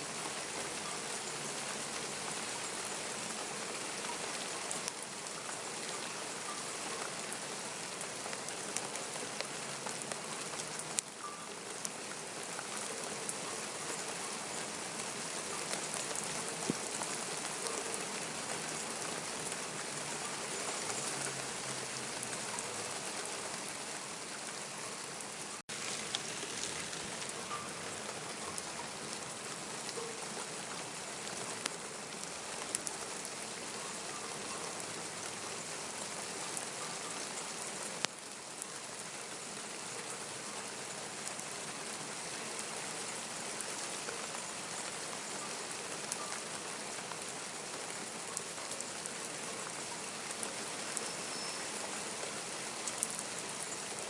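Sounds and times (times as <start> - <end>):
steady rain hiss: 0.0 - 54.0
raindrop clicks: 25.7 - 29.1.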